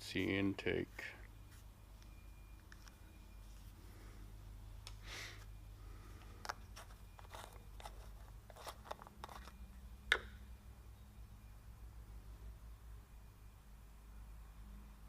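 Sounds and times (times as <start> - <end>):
gritty metal scraping and clicks: 6.8 - 9.6.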